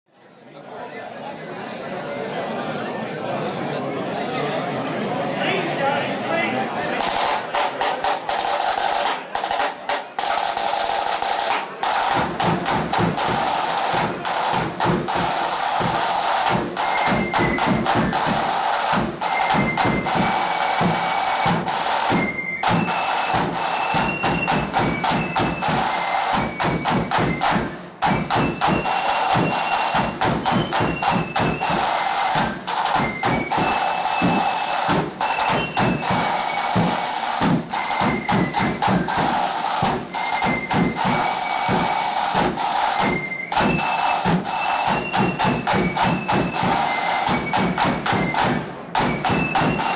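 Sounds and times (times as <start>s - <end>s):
snare drum rolls: 7.0s - 49.9s
high flute melody: 13.0s - 49.9s.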